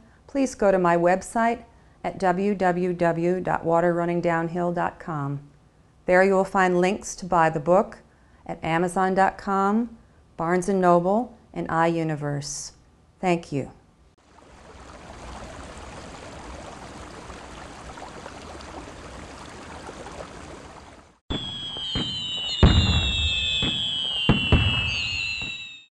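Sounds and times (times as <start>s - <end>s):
sharp bangs: 21.3s - 25.8s
high falling whistling tones: 21.3s - 25.9s.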